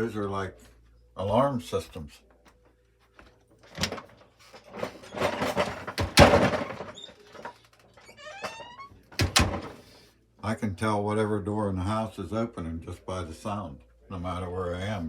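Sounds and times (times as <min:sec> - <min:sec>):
door hinges squeaking: 0:03.7 - 0:09.9
door thud: 0:04.8 - 0:07.0, 0:08.2 - 0:09.8
door latch clicks: 0:09.2 - 0:09.8.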